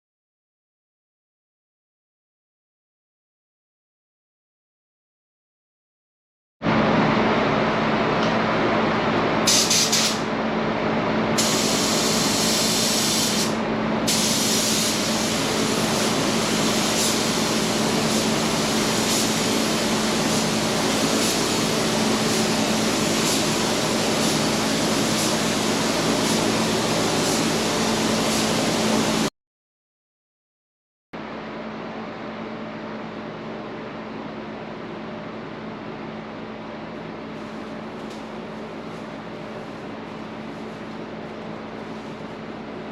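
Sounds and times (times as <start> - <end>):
steady hum: 6.6 - 29.3
paint spray gun hissing: 9.5 - 10.2, 11.4 - 29.2.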